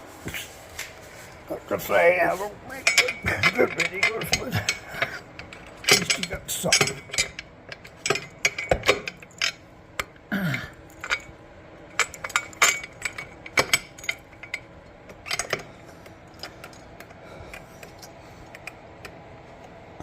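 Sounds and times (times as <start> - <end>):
metal tools and parts clinking: 1.5 - 18.8.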